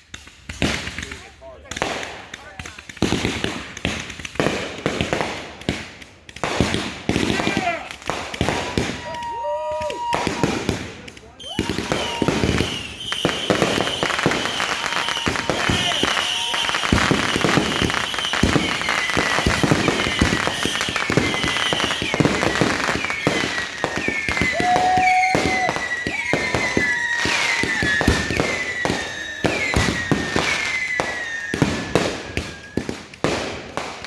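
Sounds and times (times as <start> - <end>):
fireworks crackling and banging: 0.0 - 34.0
fireworks whistles: 6.4 - 34.0.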